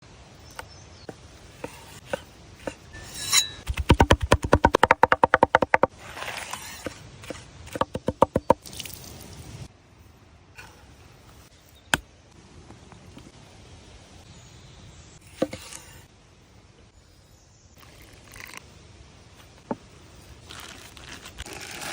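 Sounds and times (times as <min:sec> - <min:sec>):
knife chopping on a board: 0:03.4 - 0:05.9, 0:07.3 - 0:08.6.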